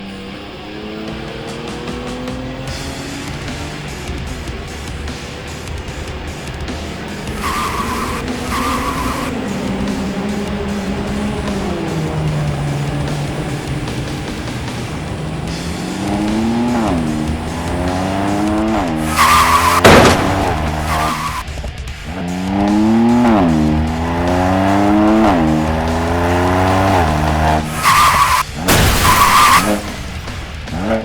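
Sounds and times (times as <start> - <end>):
car engine accelerating: 0.0 - 31.0
tyre screeches: 7.2 - 21.5, 26.2 - 30.3.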